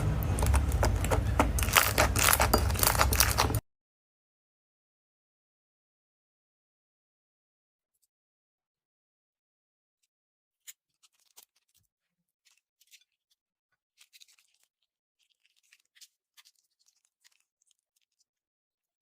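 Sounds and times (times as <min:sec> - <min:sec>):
slime squishing and popping: 0:00.0 - 0:03.6.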